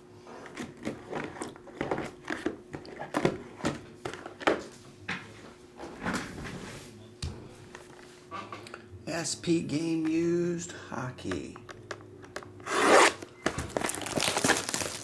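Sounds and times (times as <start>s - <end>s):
packaging crinkling and crackling: 13.5s - 15.0s.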